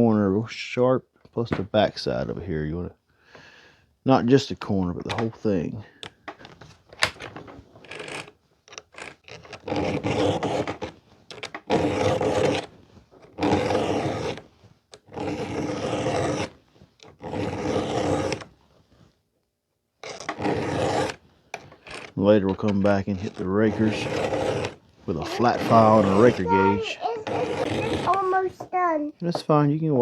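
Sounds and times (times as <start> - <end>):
file rasping on chainsaw chain: 9.0 - 10.8, 11.7 - 12.7, 13.4 - 14.4, 15.0 - 16.5, 17.2 - 18.4, 20.0 - 21.2, 23.1 - 28.3.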